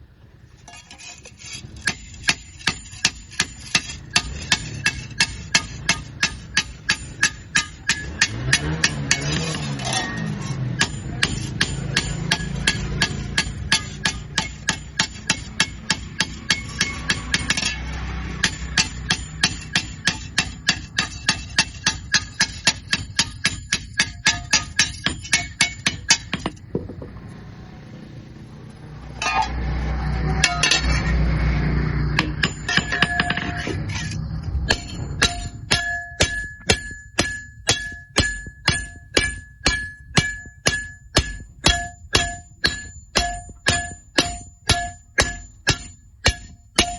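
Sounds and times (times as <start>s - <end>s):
hammer blows on metal ringing: 1.6s - 46.9s
low rumbling noise: 3.2s - 37.5s.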